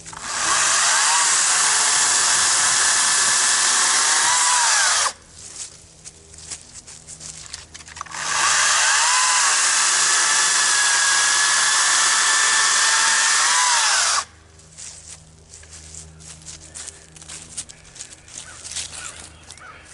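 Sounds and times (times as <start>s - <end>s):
electric chainsaw cutting log: 0.0s - 5.2s, 8.0s - 14.3s.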